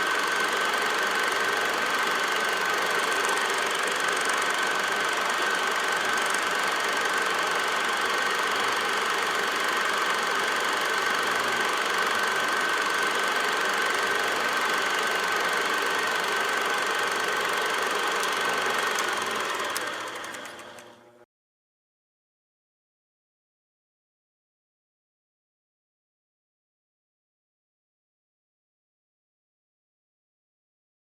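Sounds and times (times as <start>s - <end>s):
film projector whirring: 0.0s - 21.2s.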